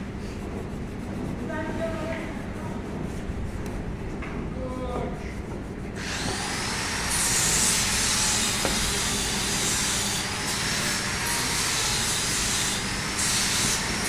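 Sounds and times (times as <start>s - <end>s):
power tool motor whining: 6.0s - 12.1s.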